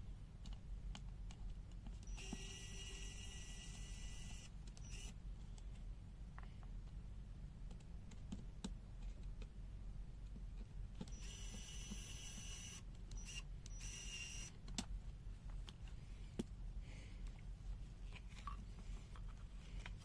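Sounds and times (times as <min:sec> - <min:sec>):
high mechanical whir: 0:02.0 - 0:05.2, 0:11.1 - 0:14.5
small clicks and taps: 0:07.6 - 0:09.6.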